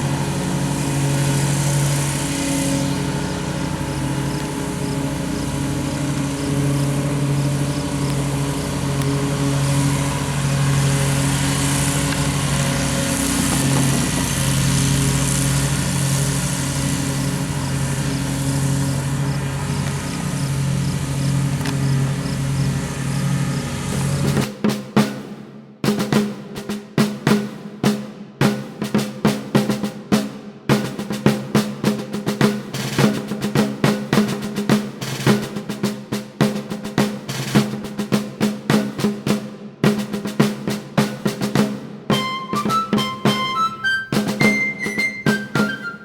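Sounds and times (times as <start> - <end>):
low mechanical hum: 0.0 - 24.4.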